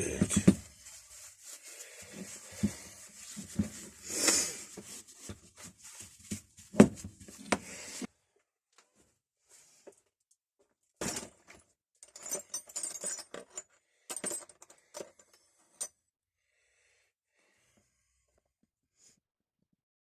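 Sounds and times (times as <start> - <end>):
metal parts knocking and clunking: 11.0 - 15.9.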